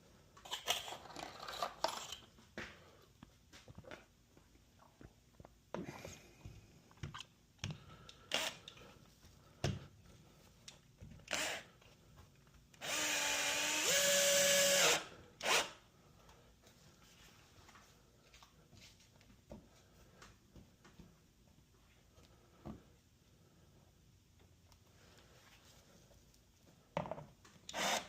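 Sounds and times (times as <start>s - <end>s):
power drill motor whine: 8.3s - 8.6s, 11.3s - 11.7s, 12.8s - 15.7s, 27.7s - 28.0s.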